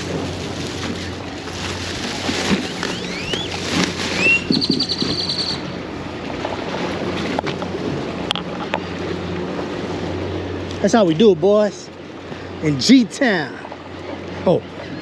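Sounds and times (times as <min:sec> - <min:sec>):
low hum: 0:00.0 - 0:15.0
water noise: 0:00.0 - 0:15.0
wind: 0:00.0 - 0:15.0
bird calling: 0:02.6 - 0:05.8.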